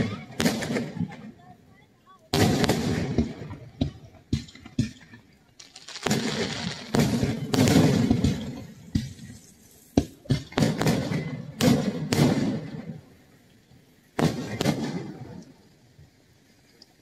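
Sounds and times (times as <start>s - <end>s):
aerial fireworks bangs: 0.0s - 1.3s, 2.3s - 13.0s, 14.2s - 15.3s
crackling hiss: 0.0s - 17.0s.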